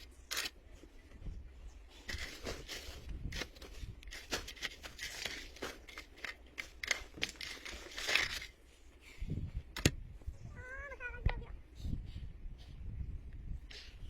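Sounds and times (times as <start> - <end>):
crinkling and rustling: 0.0 - 8.8.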